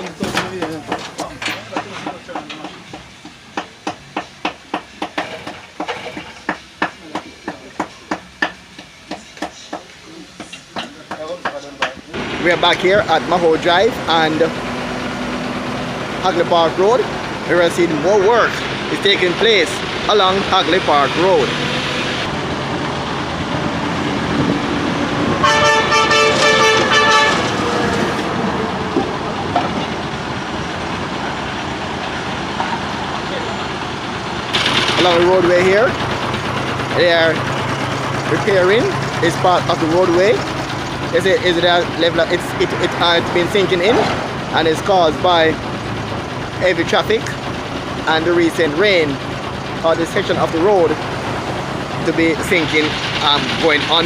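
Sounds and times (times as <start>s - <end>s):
hammer strikes: 0.0s - 12.8s
road traffic passing: 0.0s - 54.0s
vehicle horn: 25.4s - 28.1s.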